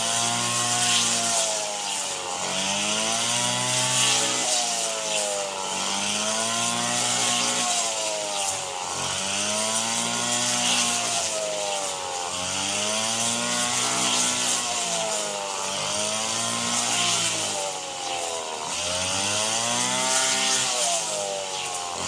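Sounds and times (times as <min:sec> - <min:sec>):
small engine running hard: 0:00.0 - 0:22.0.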